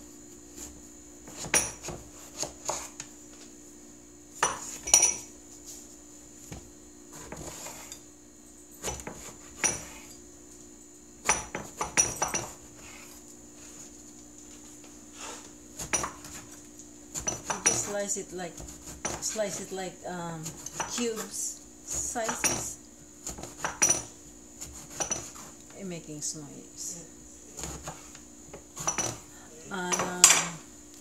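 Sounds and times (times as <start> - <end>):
faint steady hum: 0.0 - 31.0
knife chopping on cutting board: 0.6 - 3.0, 8.8 - 10.1, 15.8 - 18.0, 20.4 - 21.3, 21.9 - 25.6, 27.6 - 29.3.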